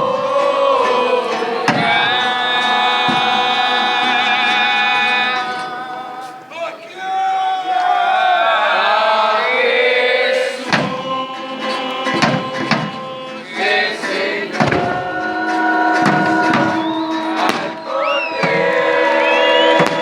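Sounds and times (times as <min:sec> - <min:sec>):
sharp knocks: 0:00.0 - 0:03.7, 0:10.7 - 0:13.8, 0:14.5 - 0:18.8
voices singing held notes: 0:00.0 - 0:20.0.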